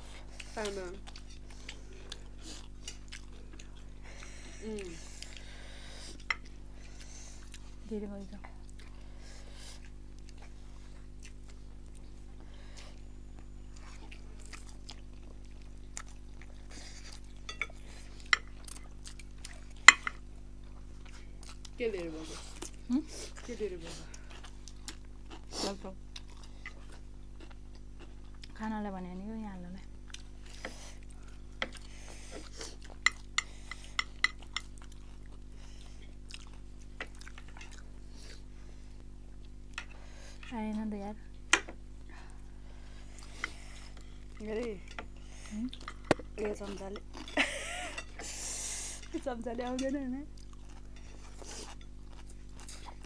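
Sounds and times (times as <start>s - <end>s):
low hum: 0.0s - 53.0s
soft chewing: 0.0s - 53.0s
utensils clinking against dish: 17.5s - 18.5s.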